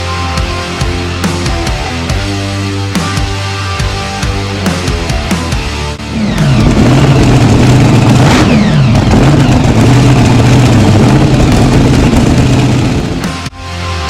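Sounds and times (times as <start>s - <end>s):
boat inboard engine running: 6.0s - 13.5s.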